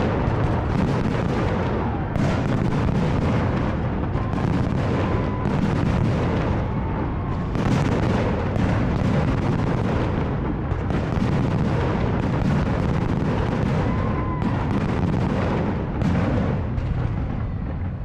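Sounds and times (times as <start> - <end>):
fireworks booming and crackling: 0.0 - 18.0
faint firework whistle: 0.6 - 8.8, 12.7 - 15.4.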